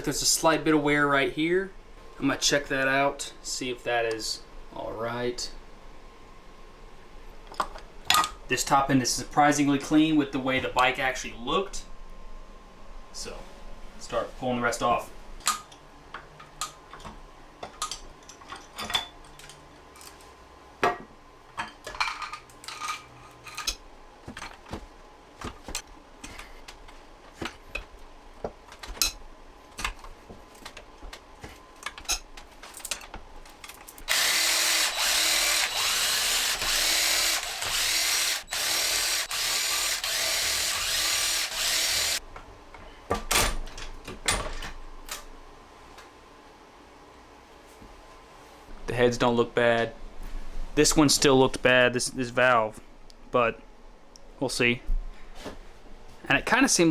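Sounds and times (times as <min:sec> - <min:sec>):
cordless power tool spinning: 0:34.0 - 0:42.2.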